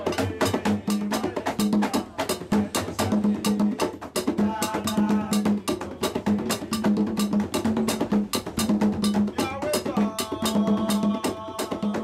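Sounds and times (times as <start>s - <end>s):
fast hand drum strokes: 0.0s - 12.0s.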